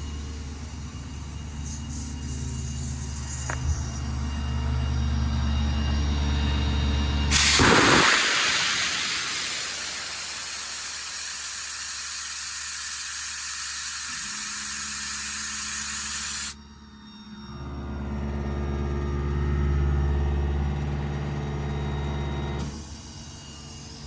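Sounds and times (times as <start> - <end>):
compressed air hissing: 7.3 - 16.6.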